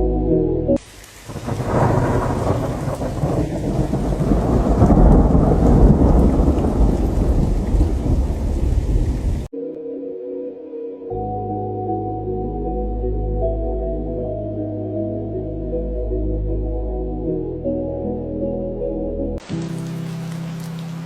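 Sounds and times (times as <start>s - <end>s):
steady rain: 0.8s - 9.5s, 19.4s - 21.0s
rumbling thunder: 1.2s - 9.5s.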